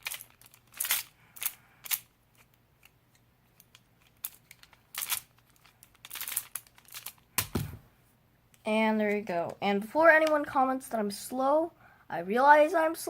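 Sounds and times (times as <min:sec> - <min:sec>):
twisty puzzle clicking turns: 0:00.0 - 0:07.2.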